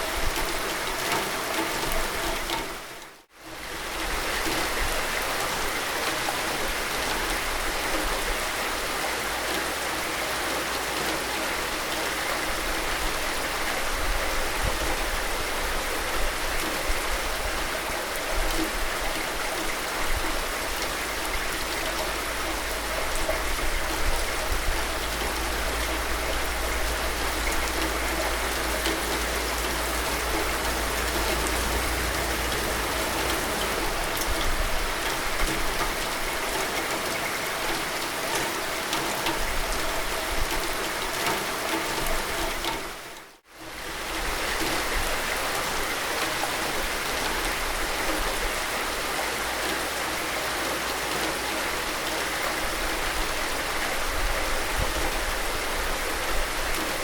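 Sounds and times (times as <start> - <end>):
steady rain: 0.0 - 57.0
low rumble: 22.1 - 35.8.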